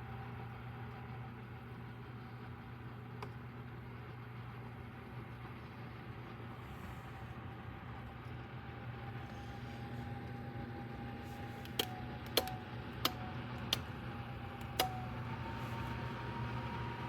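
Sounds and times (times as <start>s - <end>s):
heater fan humming: 0.0s - 17.0s
sharp clicks: 11.6s - 13.9s, 14.6s - 15.0s.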